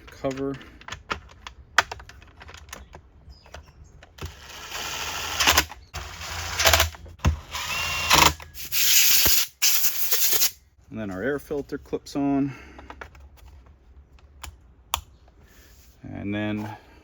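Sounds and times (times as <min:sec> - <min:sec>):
parts being handled clicks: 0:00.0 - 0:04.7, 0:12.8 - 0:15.4
cordless power driver running: 0:04.2 - 0:10.5.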